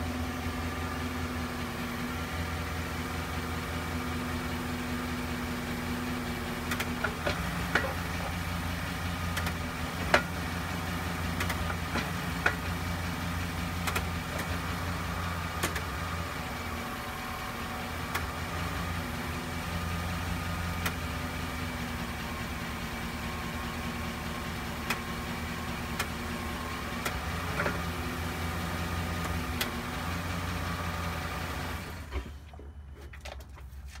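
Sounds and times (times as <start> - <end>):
truck engine idling: 0.0 - 34.0
gear shifter clicks: 9.3 - 9.6, 11.4 - 11.7, 13.8 - 14.5.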